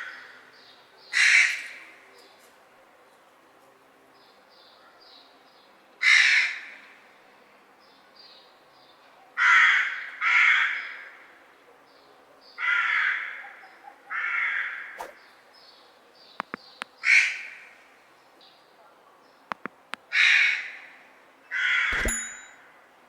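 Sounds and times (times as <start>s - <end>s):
crow cawing: 9.4s - 11.1s, 12.6s - 13.4s, 14.1s - 14.9s
sharp clicks: 16.4s - 16.9s, 19.5s - 20.1s, 22.0s - 22.6s.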